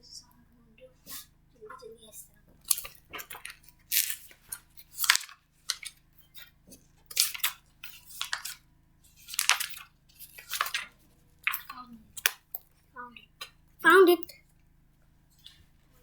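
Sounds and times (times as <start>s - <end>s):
rustling and crinkling: 2.2s - 13.6s
objects clattering: 2.5s - 12.8s.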